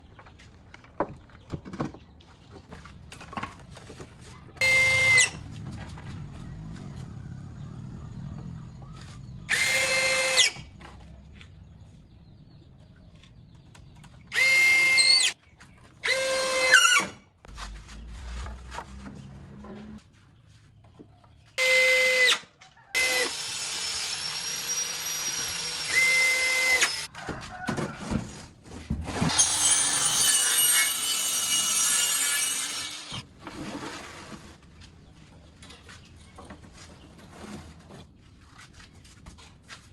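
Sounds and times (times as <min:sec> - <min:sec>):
power drill whining: 0:04.6 - 0:05.4, 0:09.5 - 0:10.7, 0:14.3 - 0:15.4, 0:23.0 - 0:27.1, 0:29.3 - 0:33.2.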